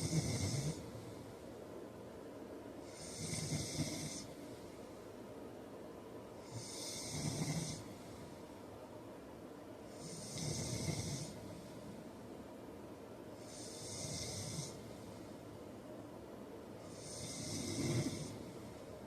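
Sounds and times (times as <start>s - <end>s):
man snoring: 0.0s - 0.8s, 2.9s - 4.3s, 6.4s - 7.9s, 10.0s - 11.4s, 13.4s - 14.8s, 16.9s - 18.4s.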